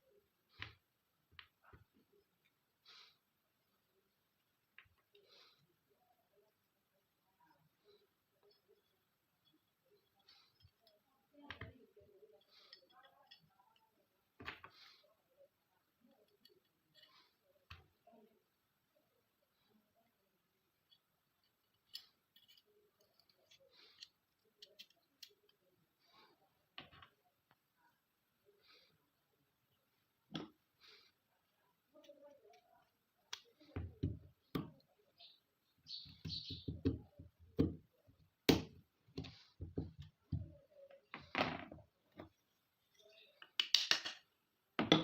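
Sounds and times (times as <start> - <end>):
faint clicks of small parts: 4.3 - 6.6, 7.4 - 18.4, 20.6 - 27.8, 28.6 - 41.3, 42.1 - 44.4
pistol parts knocking and clicking: 43.4 - 44.2.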